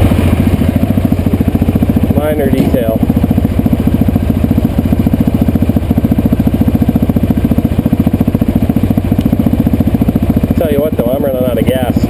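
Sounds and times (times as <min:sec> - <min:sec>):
engine running steadily: 0:00.0 - 0:12.0.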